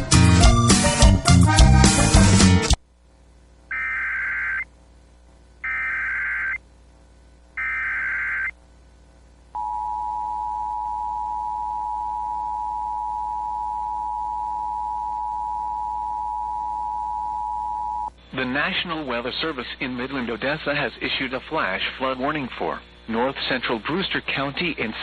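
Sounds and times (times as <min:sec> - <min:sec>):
warbling data-tone bursts: 0:03.7 - 0:04.7, 0:05.6 - 0:06.6, 0:07.6 - 0:08.6.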